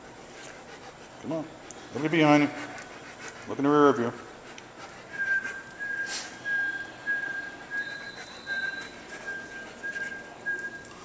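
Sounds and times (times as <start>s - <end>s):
dog whining: 5.0s - 11.0s.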